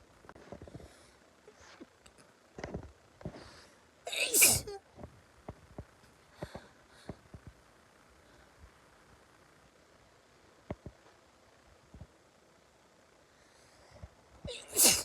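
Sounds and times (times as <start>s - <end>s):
loud sneeze: 4.1s - 4.8s, 14.5s - 15.0s.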